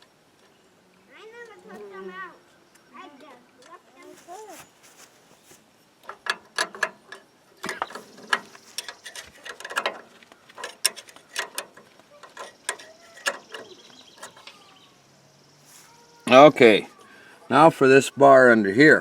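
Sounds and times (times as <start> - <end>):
hand tools clicking and clanking: 6.0 - 14.8.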